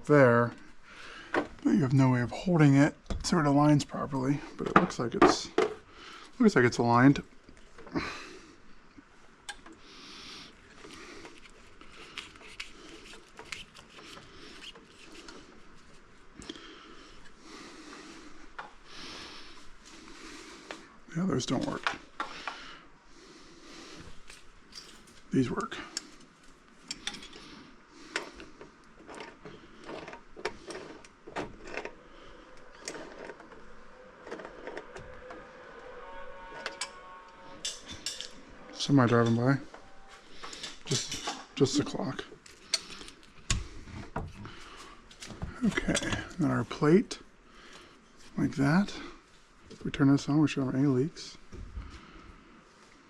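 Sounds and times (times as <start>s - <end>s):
hardware and tools being handled: 10.7s - 16.4s, 24.0s - 27.5s, 28.1s - 35.5s, 36.3s - 46.4s
plumbing parts scraping and clicking: 28.1s - 41.8s.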